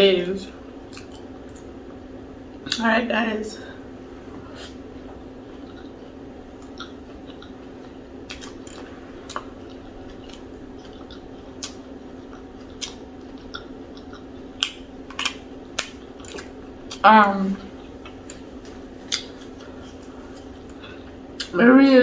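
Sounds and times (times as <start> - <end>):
low hum: 0.0 - 22.0
chewing: 0.9 - 1.7, 4.6 - 21.5
lip smacks and mouth clicks: 0.9 - 1.7, 6.6 - 7.6, 8.3 - 17.0, 17.7 - 21.5.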